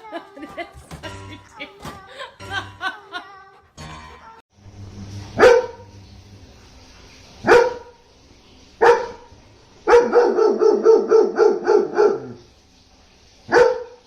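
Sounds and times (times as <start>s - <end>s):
dog barking: 5.4s - 5.8s, 7.4s - 8.0s, 8.8s - 9.3s, 9.9s - 12.4s, 13.5s - 14.0s.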